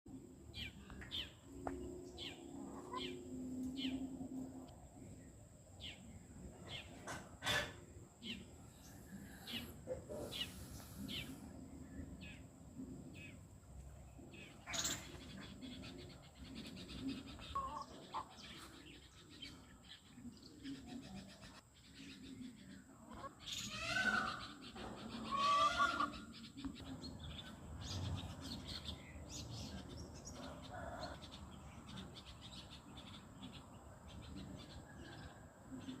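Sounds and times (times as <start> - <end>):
chickens calling: 1.1 - 4.0, 8.8 - 11.4, 14.6 - 19.0, 23.1 - 26.8.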